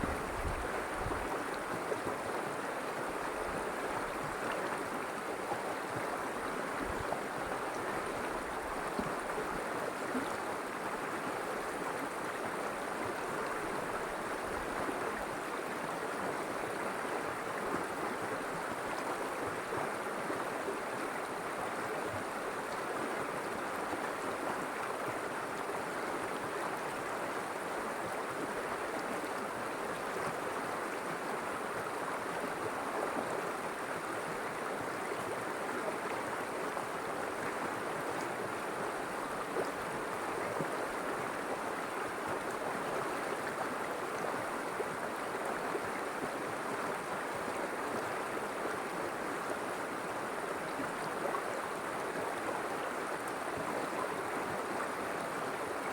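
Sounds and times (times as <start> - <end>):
river water rushing over stones: 0.0 - 55.9.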